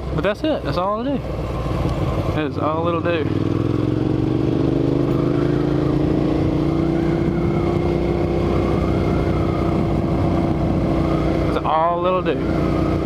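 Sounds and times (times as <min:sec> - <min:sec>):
motorcycle engine cruising: 0:00.0 - 0:13.0
wind rushing over microphone: 0:03.3 - 0:11.6.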